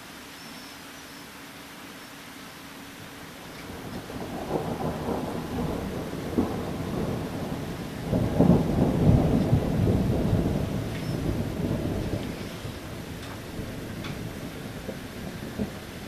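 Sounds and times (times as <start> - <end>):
rolling thunder rumbling: 3.5 - 16.0.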